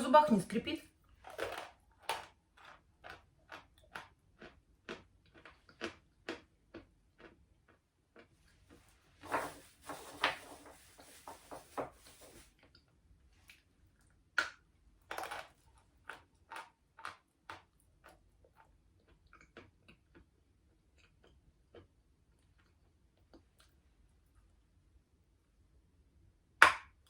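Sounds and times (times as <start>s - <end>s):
crunching and chewing chalk: 1.0s - 8.9s, 12.5s - 23.8s.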